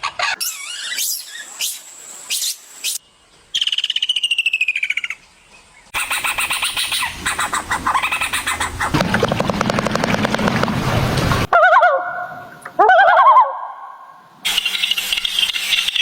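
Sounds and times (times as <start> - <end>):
bird chirps and trills: 0.0 - 9.0, 14.4 - 16.0.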